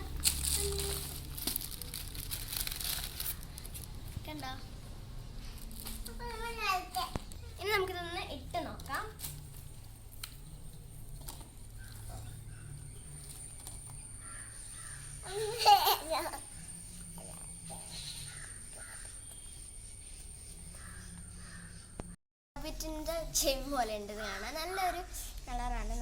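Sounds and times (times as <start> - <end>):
handling sounds: 0.0 - 4.2
child laughing: 15.2 - 16.5.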